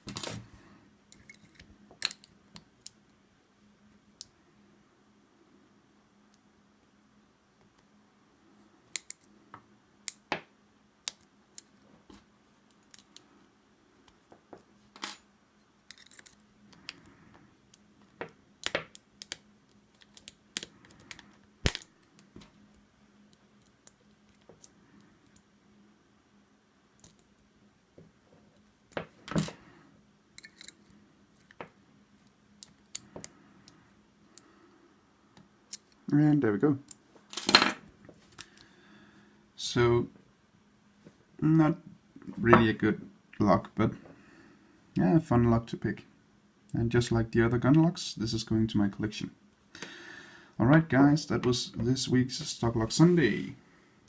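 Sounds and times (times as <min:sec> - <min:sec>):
faint steady hum: 0:00.0 - 0:54.0
lock picks clicking and scraping: 0:01.1 - 0:03.0, 0:15.8 - 0:17.0, 0:30.4 - 0:31.6, 0:35.7 - 0:36.0.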